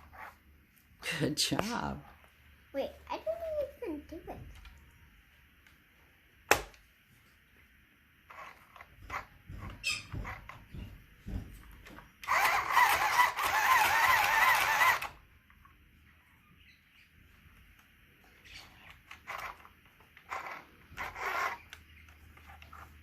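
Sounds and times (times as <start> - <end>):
sewing machine running: 12.2 - 15.2.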